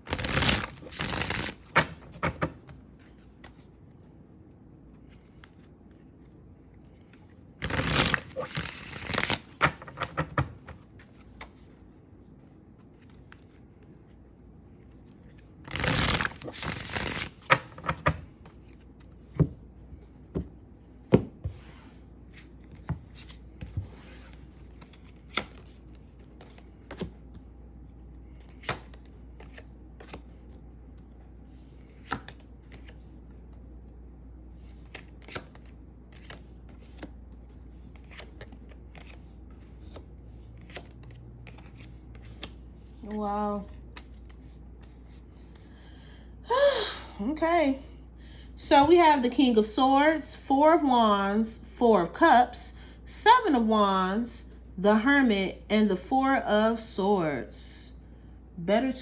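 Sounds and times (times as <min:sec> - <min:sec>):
cards riffling: 0:07.0 - 0:09.8.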